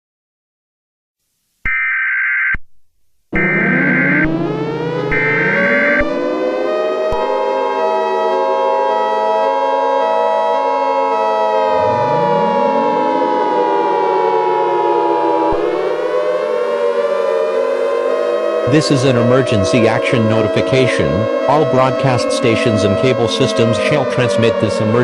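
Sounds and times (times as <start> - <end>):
sirens winding up: 3.3 - 25.0.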